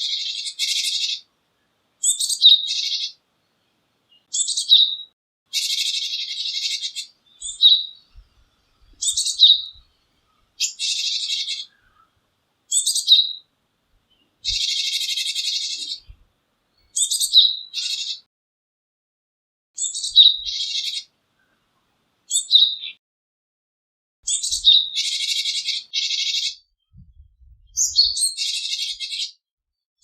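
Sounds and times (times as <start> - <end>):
bird calling: 0.0 - 1.2, 2.0 - 3.2, 4.3 - 13.4, 14.4 - 16.2, 16.8 - 18.3, 19.8 - 21.1, 22.3 - 23.0, 24.3 - 26.6.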